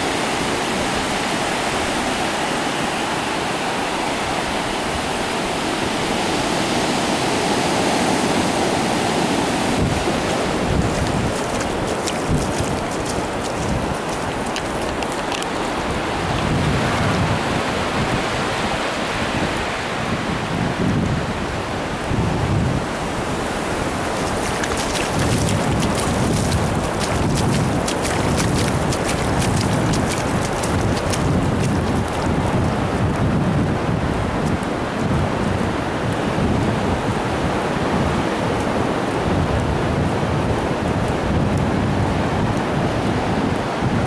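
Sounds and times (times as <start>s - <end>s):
surf washing onto beach: 0.0s - 44.0s
wind buffeting microphone: 9.4s - 44.0s.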